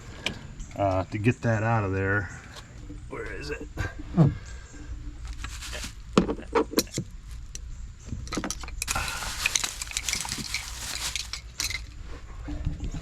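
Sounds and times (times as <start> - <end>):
metal tools clinking and rattling: 8.2 - 12.1.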